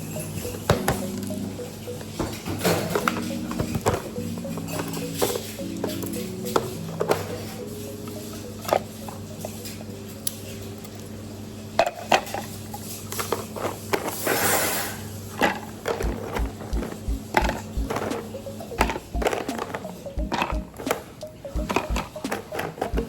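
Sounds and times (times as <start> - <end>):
soft background music: 0.0 - 14.3, 15.4 - 23.0
low thudding beat: 16.0 - 18.2, 18.8 - 20.8, 21.6 - 22.3.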